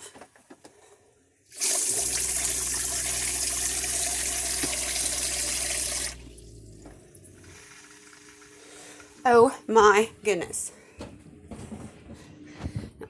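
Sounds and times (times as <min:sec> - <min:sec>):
water rushing from tap: 0:01.5 - 0:09.3
water pump humming: 0:01.5 - 0:10.3.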